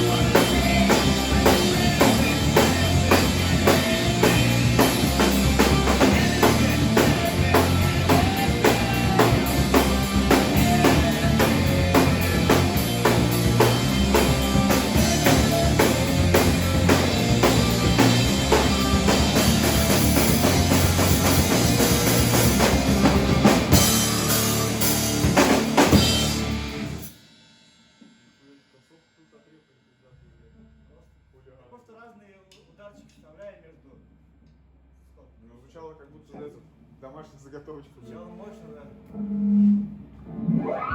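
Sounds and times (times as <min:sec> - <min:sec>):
rock song with drums: 0:00.0 - 0:28.2.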